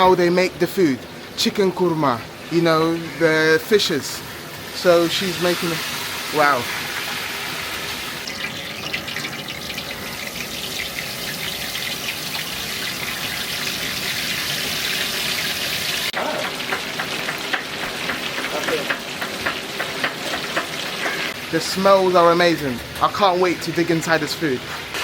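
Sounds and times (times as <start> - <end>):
food sizzling in hot oil: 2.4 - 23.2.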